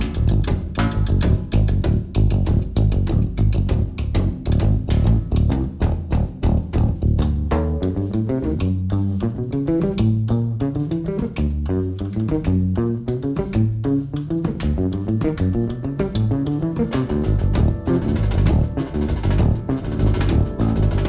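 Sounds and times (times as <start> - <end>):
bass line: 0.0 - 21.0
cymbals: 16.5 - 21.0.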